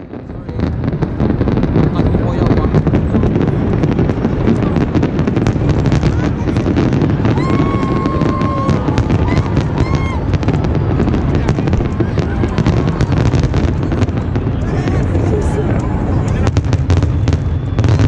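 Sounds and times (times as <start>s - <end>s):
fireworks crackling and bursting: 0.0s - 18.0s
high firework whistle: 5.6s - 14.6s, 16.7s - 18.0s.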